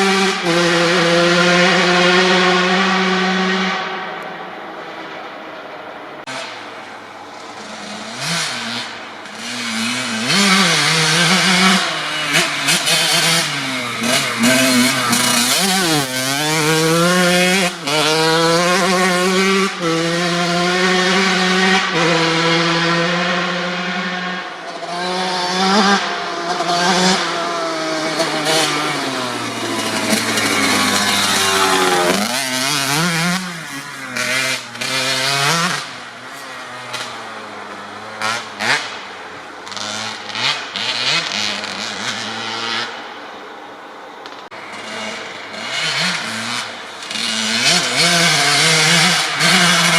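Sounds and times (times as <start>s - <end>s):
two-stroke dirt bike revving: 0.0s - 4.5s, 6.2s - 43.1s, 44.5s - 49.9s.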